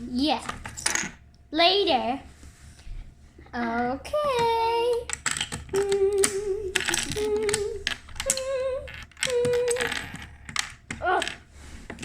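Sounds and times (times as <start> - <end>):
girl humming: 5.7 - 10.4.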